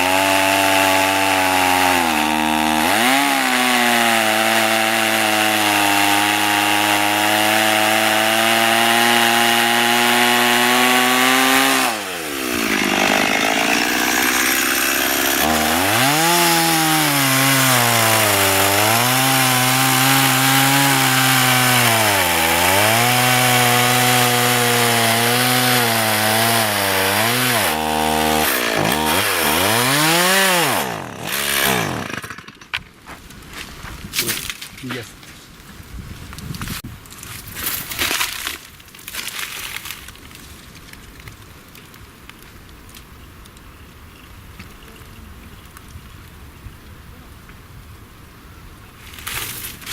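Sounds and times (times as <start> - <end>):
chainsaw cutting wood: 0.0 - 32.8.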